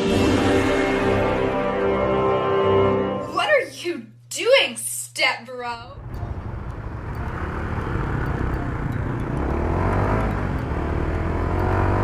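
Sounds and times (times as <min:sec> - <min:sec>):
motorcycle engine droning: 0:06.0 - 0:12.0.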